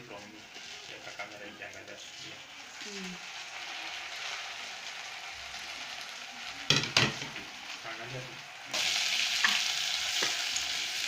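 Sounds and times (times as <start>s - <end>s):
fish and onions sizzling in oil: 0.0s - 11.0s.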